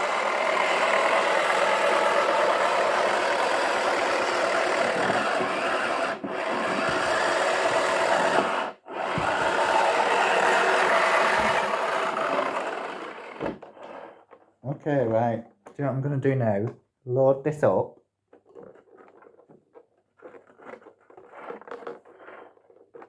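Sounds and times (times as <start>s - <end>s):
toy washing machine whirring: 0.0s - 14.6s.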